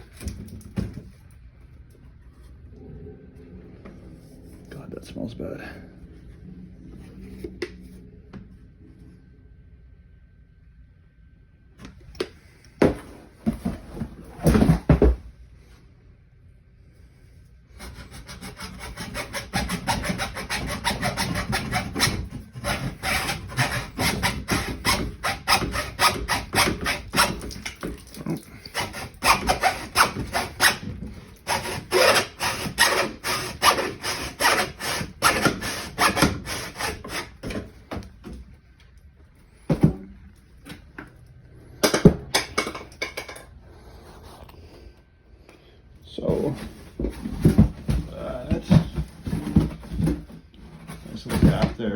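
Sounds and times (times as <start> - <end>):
hand saw cutting pipe: 17.8 - 27.8, 28.4 - 37.6.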